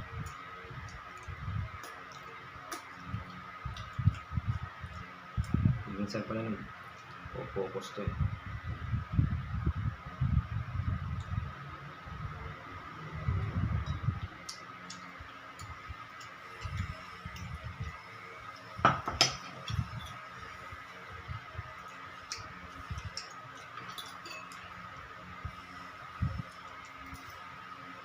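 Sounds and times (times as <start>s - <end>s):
faint steady whine: 0.0s - 28.0s
cutlery clinking against a plate: 22.3s - 24.7s.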